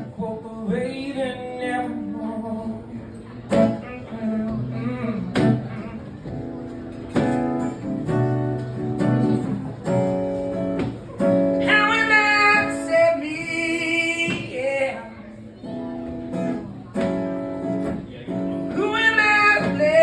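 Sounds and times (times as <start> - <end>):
acoustic guitar strumming: 0.0 - 20.0.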